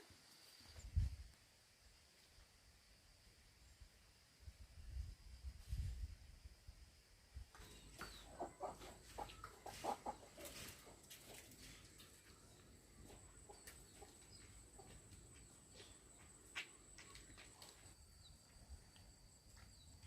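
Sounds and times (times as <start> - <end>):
chickens clucking: 7.6 - 16.3.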